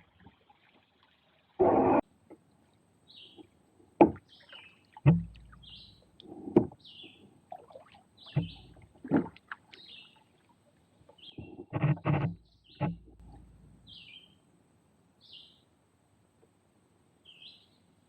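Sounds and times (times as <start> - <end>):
bird chirping: 3.0 - 3.5, 4.2 - 4.8, 5.4 - 7.3, 8.2 - 8.8, 9.7 - 10.3, 11.1 - 14.4, 15.2 - 15.6, 17.2 - 17.8
knocks on plastic kayak hull: 4.0 - 4.2, 5.1 - 5.4.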